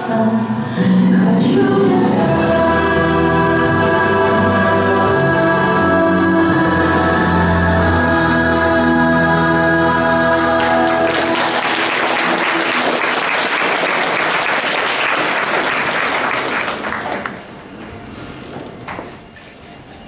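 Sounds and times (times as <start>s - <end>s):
audience applauding: 10.3s - 17.6s.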